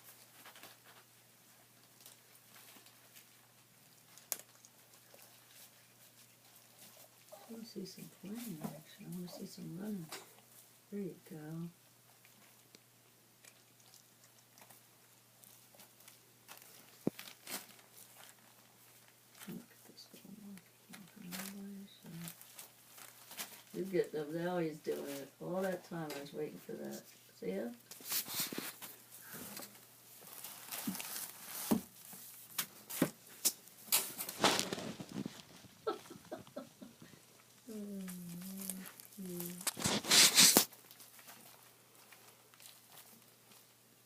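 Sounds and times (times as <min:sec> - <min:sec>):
faint crinkling and scratching: 0:00.0 - 0:44.0
kittens scampering: 0:34.3 - 0:40.7.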